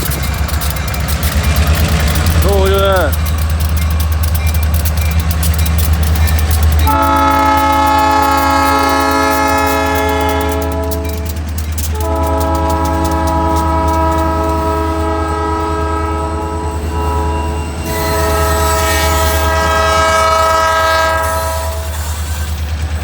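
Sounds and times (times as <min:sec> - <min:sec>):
low rumble of moving train: 0:00.0 - 0:23.0
locomotive air horn blasts: 0:06.9 - 0:22.0.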